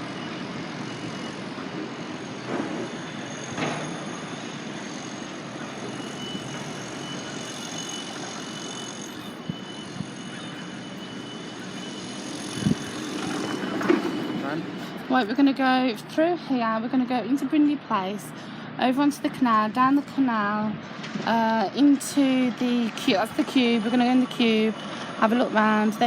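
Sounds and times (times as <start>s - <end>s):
faint high steady tones: 0.0s - 18.2s
distant traffic hum: 0.0s - 26.0s.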